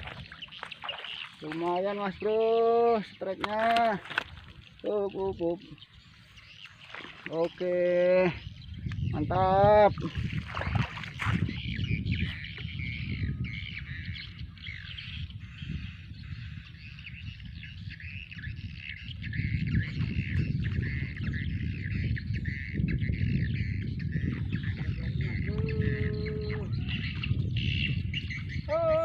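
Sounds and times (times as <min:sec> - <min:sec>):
birds chirping and twittering: 0:00.0 - 0:29.0.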